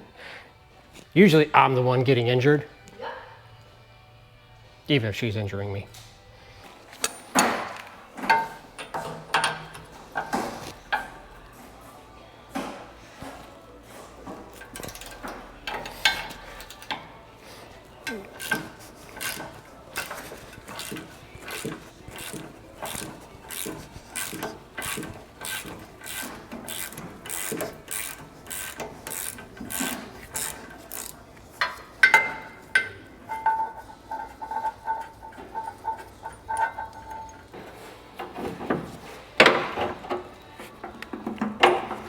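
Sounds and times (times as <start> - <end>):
hand tool rasping scrape: 14.0 - 39.4.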